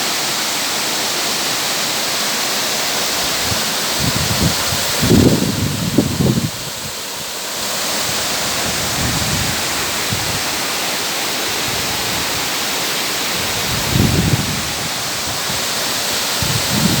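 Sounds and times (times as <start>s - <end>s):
waterfall rushing: 0.0s - 17.0s
wind buffeting microphone: 3.2s - 7.0s, 8.0s - 10.6s, 13.3s - 17.0s.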